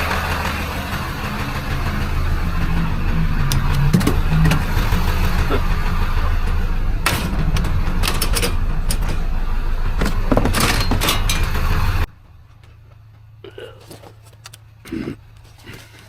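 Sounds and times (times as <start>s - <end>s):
truck engine rumbling: 0.0s - 16.0s
sharp clicks and knocks: 3.4s - 4.9s, 6.4s - 9.4s, 10.0s - 11.7s, 13.8s - 14.7s.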